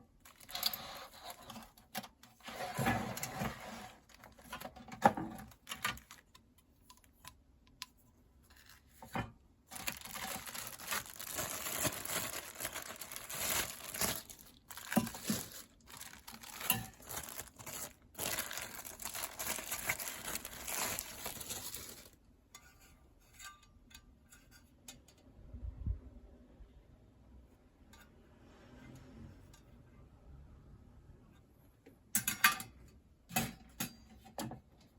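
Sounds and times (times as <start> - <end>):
crinkling rustling handling noise: 0.1 - 7.2, 8.4 - 22.2.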